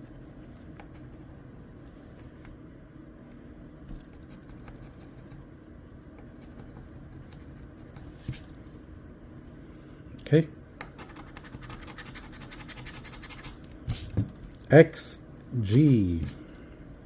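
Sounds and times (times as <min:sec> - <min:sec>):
scratch-off ticket being scratched: 0:11.0 - 0:13.6.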